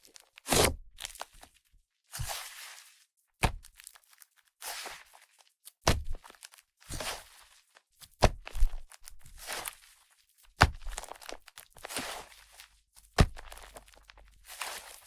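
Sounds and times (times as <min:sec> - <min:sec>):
clay slime crackling: 0:03.4 - 0:15.0.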